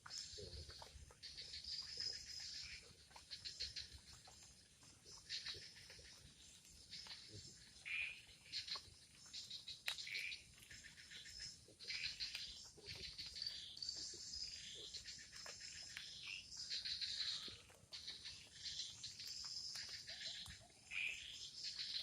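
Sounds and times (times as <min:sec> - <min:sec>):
insects chirping and buzzing: 0:00.0 - 0:22.0.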